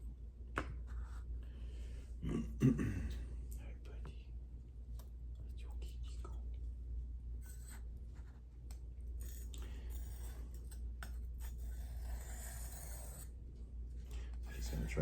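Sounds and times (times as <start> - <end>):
steady low hum: 0.0 - 15.0
knife scraping on sharpening stone: 9.2 - 13.3.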